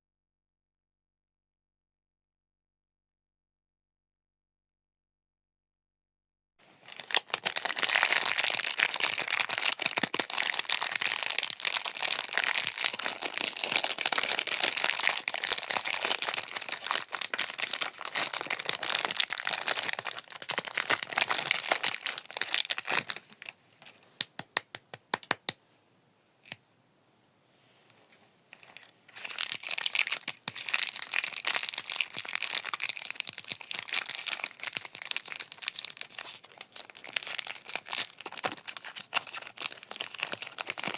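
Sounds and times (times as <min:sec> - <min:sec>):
plastic wrappers crinkling and tearing: 0:06.8 - 0:24.0, 0:28.5 - 0:40.9.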